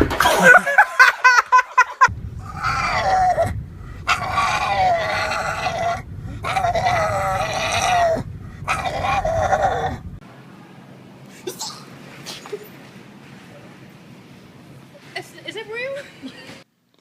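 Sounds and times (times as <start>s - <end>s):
animal drawn-out cries: 2.4s - 10.1s.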